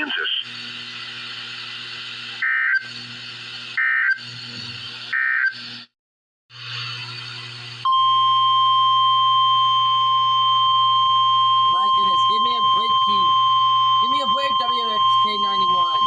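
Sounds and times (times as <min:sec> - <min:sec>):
radio hiss: 0:00.0 - 0:02.4
steady warning alarm tone: 0:02.4 - 0:03.0, 0:03.8 - 0:04.2, 0:07.9 - 0:16.0
screechy digital data bursts: 0:02.4 - 0:04.5, 0:11.7 - 0:16.0.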